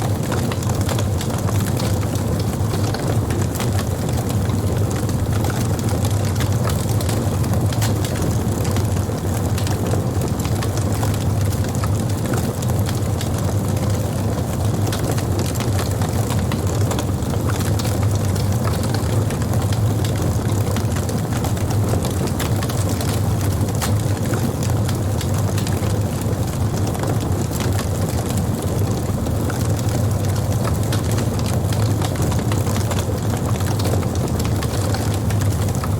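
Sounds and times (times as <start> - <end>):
campfire crackling: 23.3 - 35.9.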